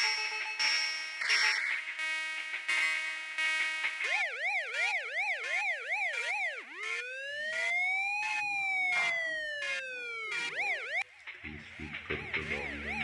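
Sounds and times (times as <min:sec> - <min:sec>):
siren yelp sweeps: 0:04.0 - 0:13.0.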